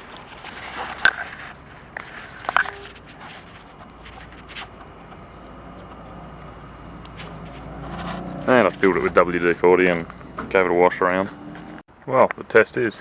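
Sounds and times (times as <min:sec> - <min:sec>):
small parts scraping: 0:00.0 - 0:10.2.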